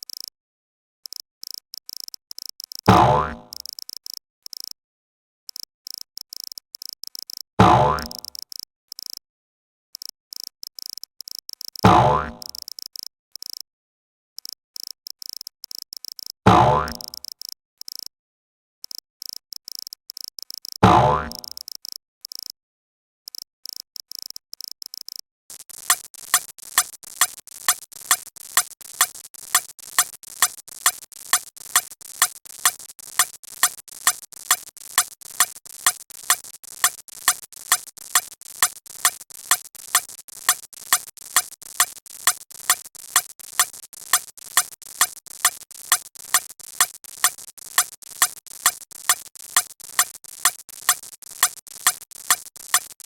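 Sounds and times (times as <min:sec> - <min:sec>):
electronic beat clicks: 0:16.8 - 0:17.1, 0:25.5 - 0:53.0.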